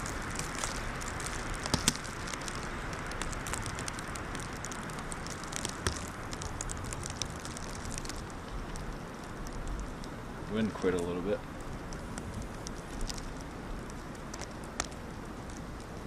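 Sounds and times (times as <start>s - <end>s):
plastic bag crackling: 0.0s - 9.9s
wind blowing: 0.0s - 16.0s.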